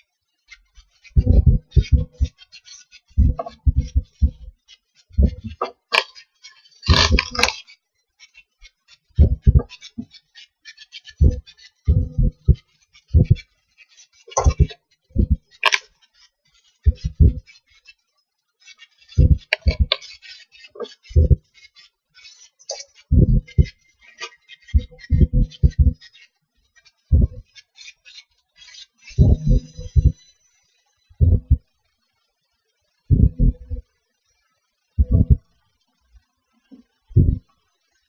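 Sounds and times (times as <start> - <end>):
low-pitched beeps from speakers: 1.2 - 2.3, 3.2 - 4.5, 5.2 - 5.6, 9.2 - 9.7, 11.2 - 12.6, 13.2 - 13.4, 14.4 - 15.5, 16.9 - 17.4, 19.2 - 19.9, 21.2 - 21.4, 23.1 - 23.7, 24.8 - 26.0, 27.1 - 27.5, 29.2 - 31.7, 33.1 - 33.8, 35.0 - 35.5, 37.1 - 37.4.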